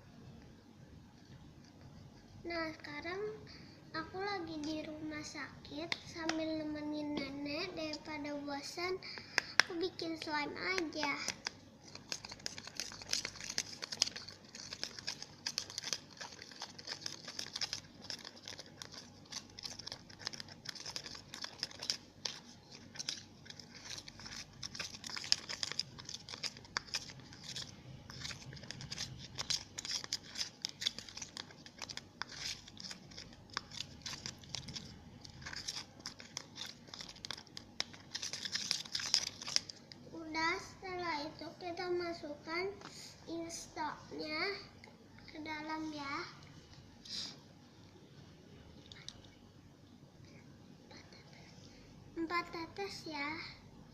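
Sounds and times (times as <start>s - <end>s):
slime being stirred with sticky clicks: 4.2s - 40.0s.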